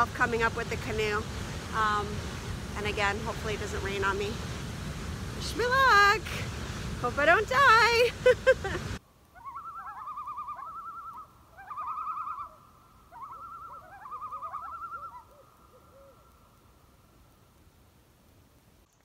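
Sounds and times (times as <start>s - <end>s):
loon tremolo call: 9.3s - 16.3s
low bird notes: 9.4s - 16.5s.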